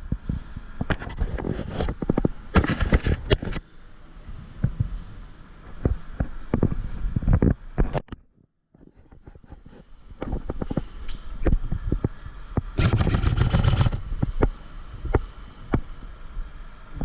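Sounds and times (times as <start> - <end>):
wind on microphone: 8.8 - 17.0
gear knocking: 12.8 - 14.0.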